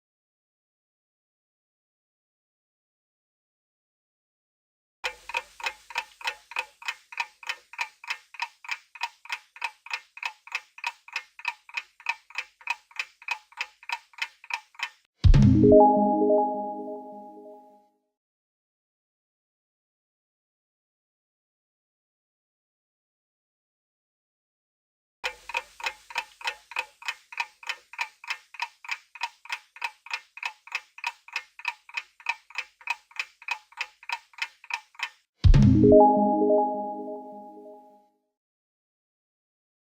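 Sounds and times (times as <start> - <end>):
clock ticking: 5.0 - 15.1, 25.2 - 35.3.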